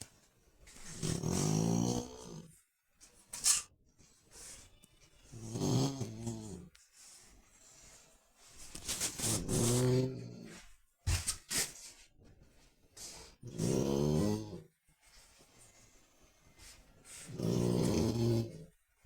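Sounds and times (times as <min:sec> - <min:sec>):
dog snoring: 0:00.9 - 0:02.5, 0:05.3 - 0:06.8, 0:13.4 - 0:14.7, 0:17.3 - 0:18.7.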